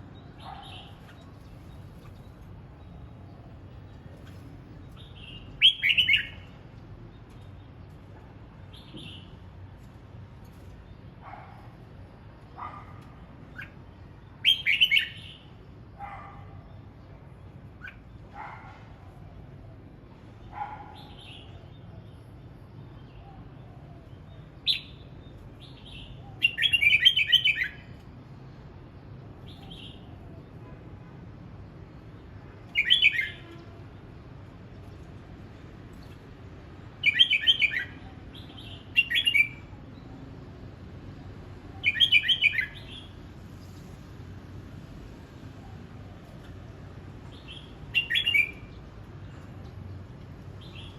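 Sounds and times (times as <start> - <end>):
bird singing chattering phrases: 37.0 - 39.7.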